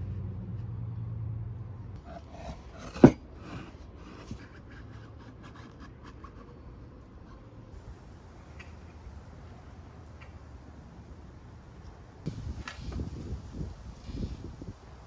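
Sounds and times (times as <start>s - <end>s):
faint handling: 2.0s - 4.6s
rubbing and scraping on wood: 2.0s - 6.5s.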